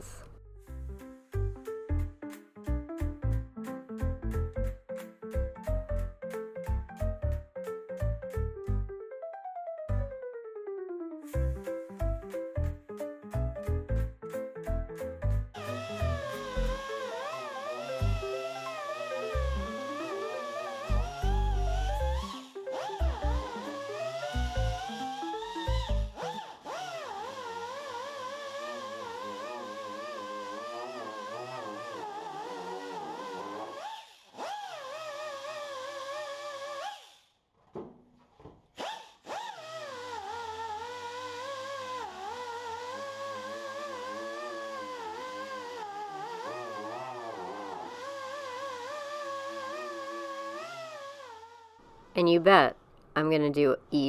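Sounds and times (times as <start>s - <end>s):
lofi music melody: 0.0s - 26.4s
music beat: 1.0s - 8.8s, 11.3s - 21.4s.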